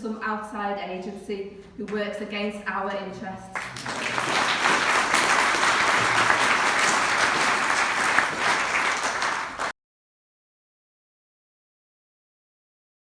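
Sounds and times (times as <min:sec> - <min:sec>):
audience applauding: 0:03.6 - 0:09.7.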